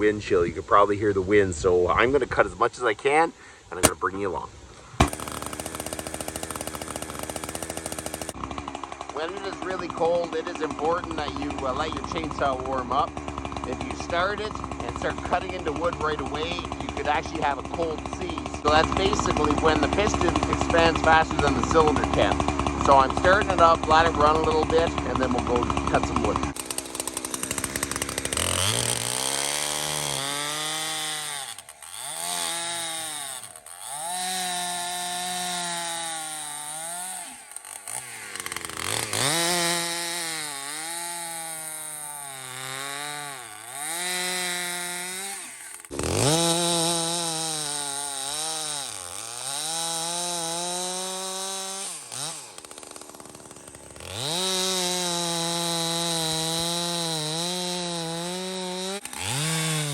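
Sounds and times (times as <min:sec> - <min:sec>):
chainsaw running at high revs: 0:03.8 - 0:04.0, 0:05.0 - 0:59.9.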